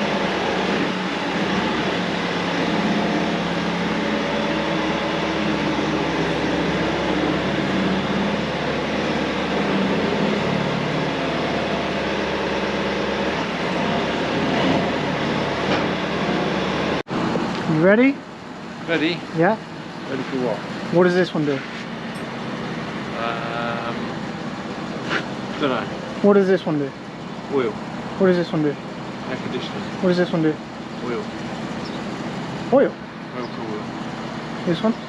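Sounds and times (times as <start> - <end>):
tractor engine running: 0.0 - 35.0.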